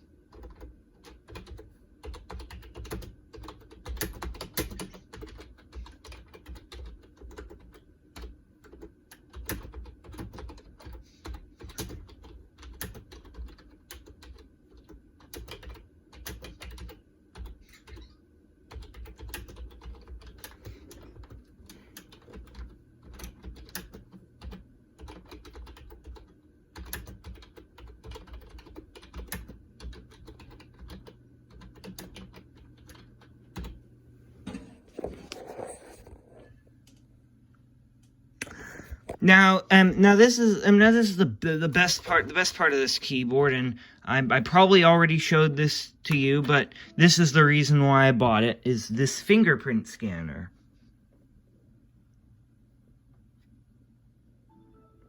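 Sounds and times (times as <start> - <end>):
soft keyboard typing: 0.3 - 33.8.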